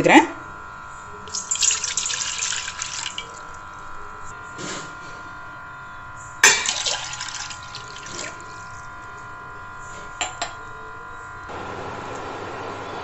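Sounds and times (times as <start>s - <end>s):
water pouring into a pot: 1.2s - 3.8s, 6.4s - 8.8s.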